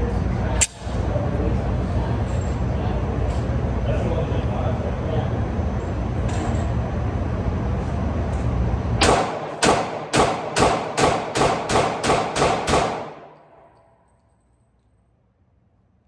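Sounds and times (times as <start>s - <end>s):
pistol shots: 9.0s - 13.6s.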